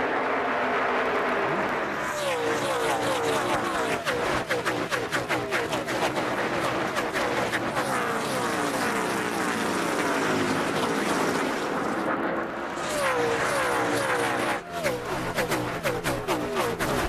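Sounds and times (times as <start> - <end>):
race cars passing at speed: 0.0 - 17.0.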